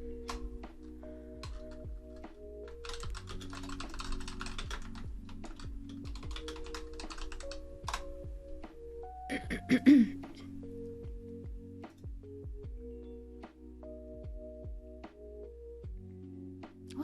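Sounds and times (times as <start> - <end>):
background music: 0.0 - 17.0
keyboard typing: 0.1 - 8.2.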